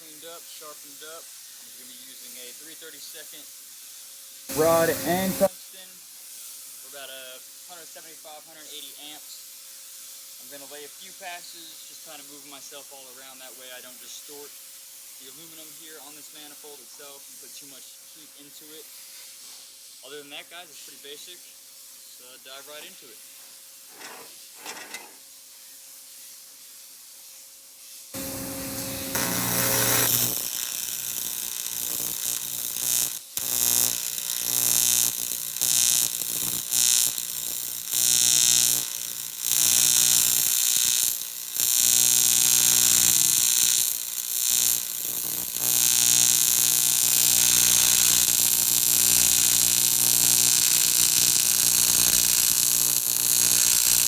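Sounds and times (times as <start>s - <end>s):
welding arc buzzing: 4.5s - 5.5s, 28.2s - 54.0s.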